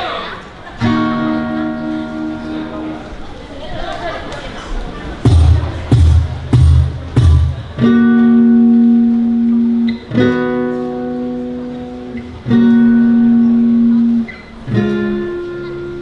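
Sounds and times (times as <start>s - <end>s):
ringing guitar chords: 0.8s - 3.2s, 5.3s - 16.0s
heavy drum hits: 5.3s - 7.8s.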